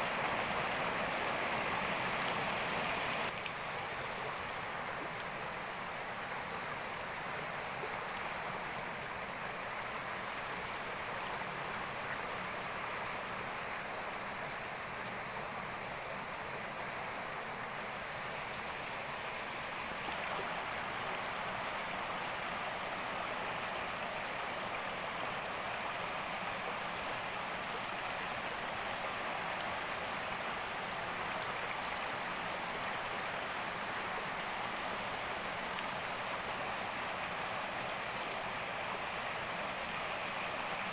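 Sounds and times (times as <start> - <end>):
rushing water hiss: 0.0 - 3.8.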